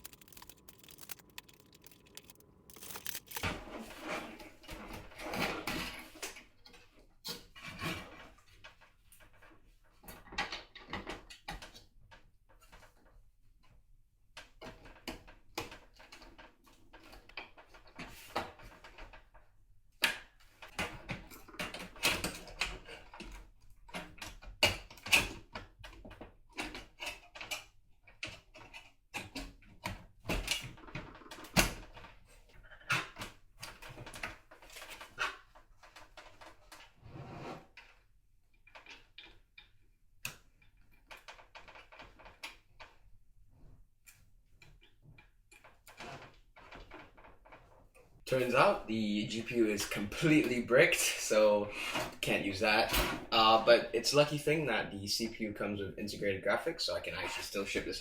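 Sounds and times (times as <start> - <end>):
hands handling computer parts: 0.0 - 3.6.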